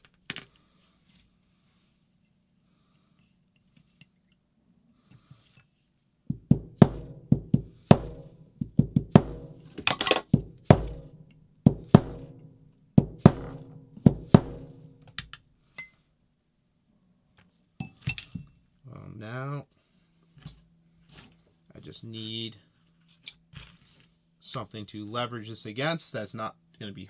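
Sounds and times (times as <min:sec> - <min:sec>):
hammer striking metal: 0:06.6 - 0:15.1.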